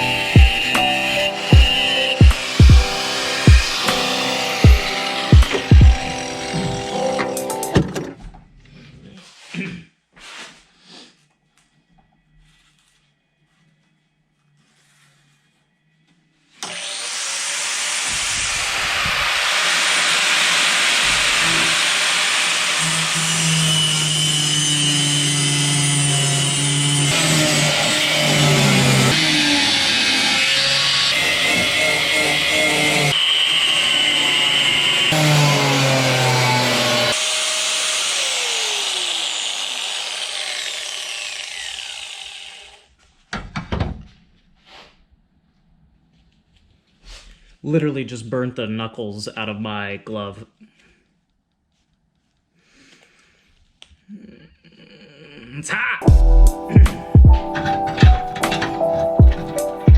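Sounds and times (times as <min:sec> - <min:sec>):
power grinder on sheet steel: 0:00.0 - 0:07.8, 0:16.6 - 0:42.9, 0:56.0 - 0:59.9
short knocks and rubbing: 0:56.1 - 0:59.9.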